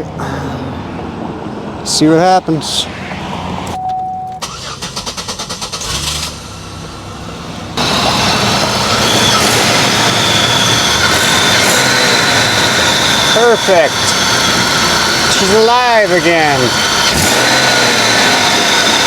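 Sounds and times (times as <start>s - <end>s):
car engine running: 4.4s - 19.0s.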